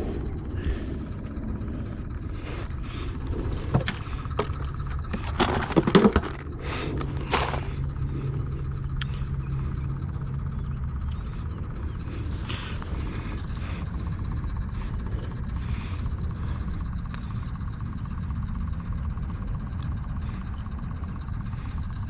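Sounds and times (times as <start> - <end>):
low background rumble: 0.0 - 22.0
loud rattling knocks: 3.4 - 7.8.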